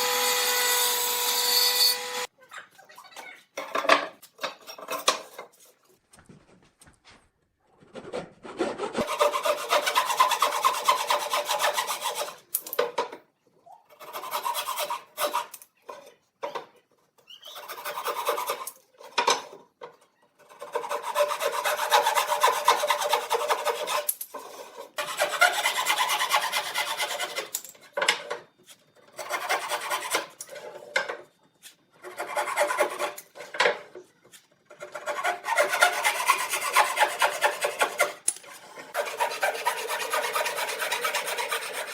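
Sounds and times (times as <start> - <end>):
hand rasp scraping wood: 8.7 - 12.4, 20.5 - 27.5, 29.2 - 30.4, 32.0 - 33.5, 34.7 - 38.2, 38.8 - 41.9.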